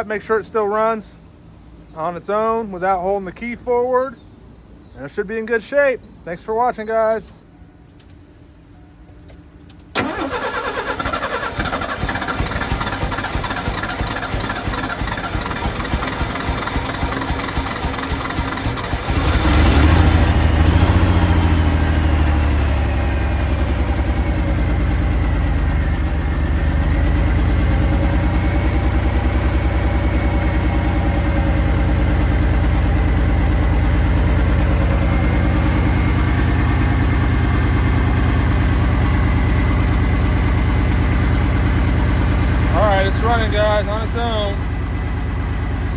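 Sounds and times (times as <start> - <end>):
truck engine starting and idling: 9.3 - 45.9.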